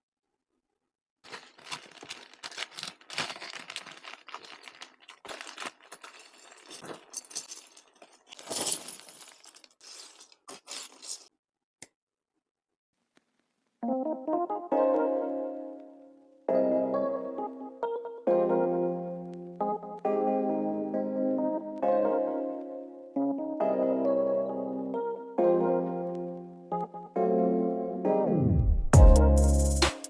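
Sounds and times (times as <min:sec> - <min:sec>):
packaging crinkling and tearing: 0:01.2 - 0:11.3
plastic pieces clinking and rattling: 0:01.2 - 0:11.3.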